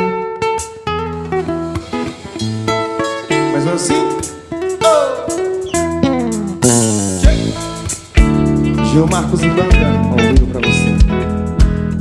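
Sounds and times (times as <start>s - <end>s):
bass: 0.0s - 2.9s, 5.8s - 12.0s
plucked guitar: 0.0s - 12.0s.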